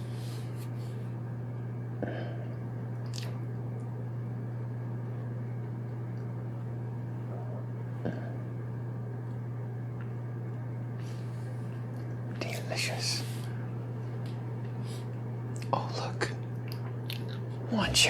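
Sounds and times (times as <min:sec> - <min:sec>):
low hum: 0:00.0 - 0:18.0
chewing cupcake: 0:15.5 - 0:17.6.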